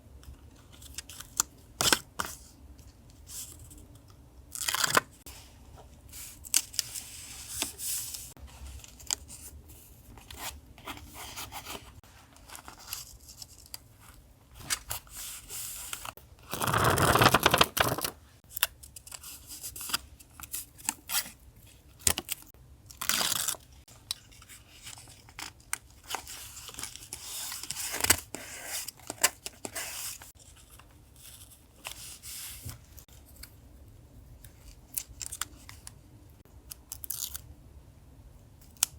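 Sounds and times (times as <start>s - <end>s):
paper rustling and tearing: 14.6s - 18.2s.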